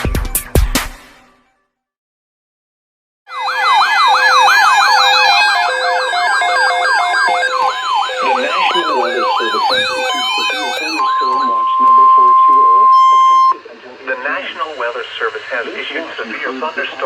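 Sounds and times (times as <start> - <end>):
electronic siren sweeping: 3.3 - 13.7
low beeping tone: 3.4 - 13.6
faint wavering tones: 3.4 - 14.1.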